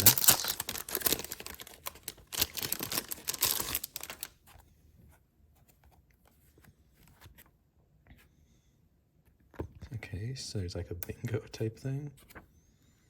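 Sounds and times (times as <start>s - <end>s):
packaging tearing and crinkling: 0.0s - 4.3s.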